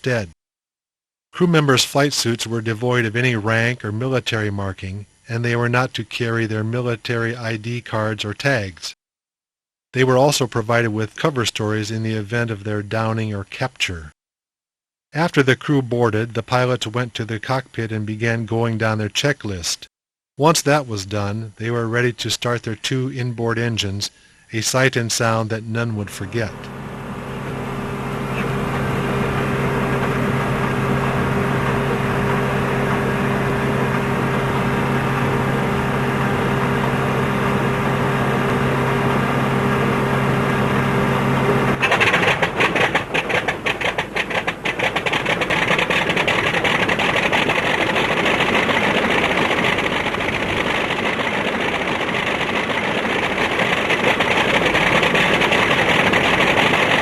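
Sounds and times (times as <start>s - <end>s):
engine popping irregularly: 26.2s - 57.0s
radial piston engine starting: 26.3s - 57.0s.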